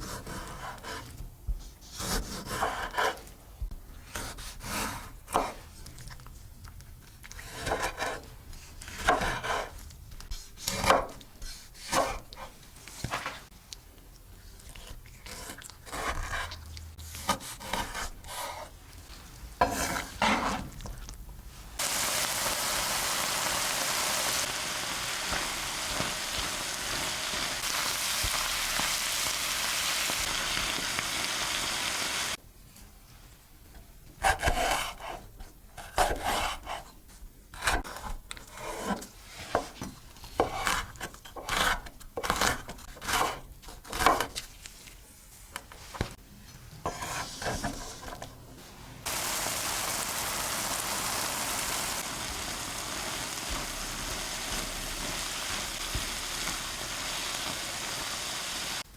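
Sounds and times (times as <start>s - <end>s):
spatula scraping pan: 19.6s - 20.8s, 24.0s - 30.6s, 51.8s - 58.8s
food sizzling in hot oil: 21.8s - 32.4s, 49.0s - 58.9s.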